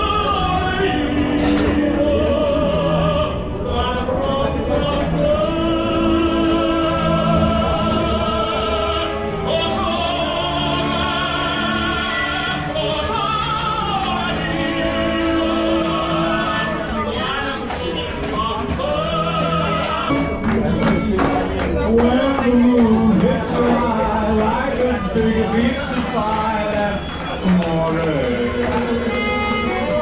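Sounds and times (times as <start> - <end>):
instrumental accompaniment: 0.0 - 30.0
operatic singing: 0.0 - 30.0.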